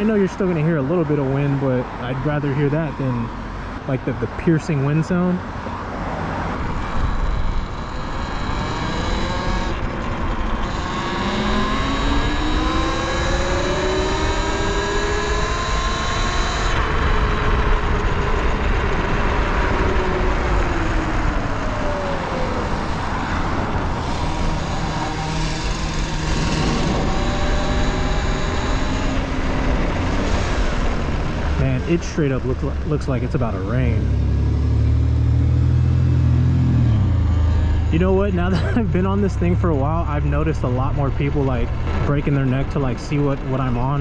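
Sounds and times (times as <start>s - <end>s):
road noise: 0.0s - 44.0s
electric motor whining: 6.5s - 18.8s, 19.6s - 31.4s, 35.0s - 38.9s.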